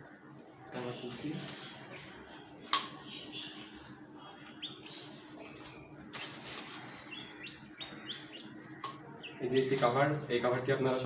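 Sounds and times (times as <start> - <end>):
high bird chirps: 1.1 - 10.0.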